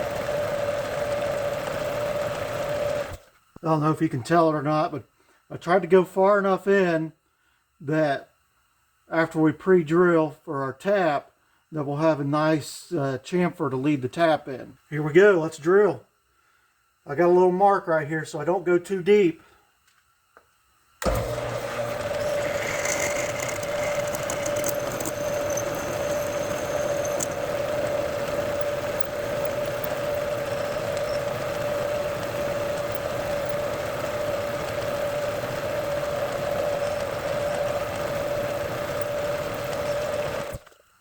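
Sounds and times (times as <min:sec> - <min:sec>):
metal lathe drilling humming: 0:00.0 - 0:03.2, 0:21.0 - 0:40.6
faint high squeal: 0:22.2 - 0:28.0.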